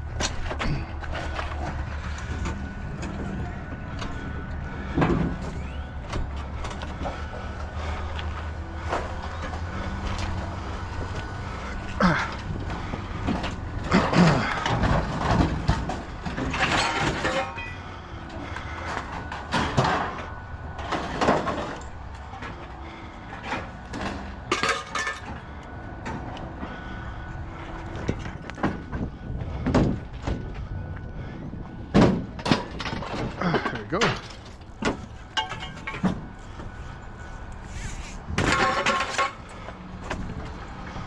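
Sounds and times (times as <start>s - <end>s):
steady low rumble: 0.0s - 41.0s
scraping and knocking on metal: 37.6s - 39.5s.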